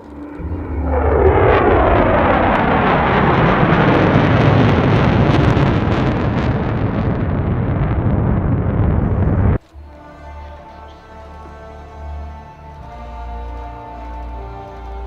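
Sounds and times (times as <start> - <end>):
military jets passing: 0.0 - 11.5.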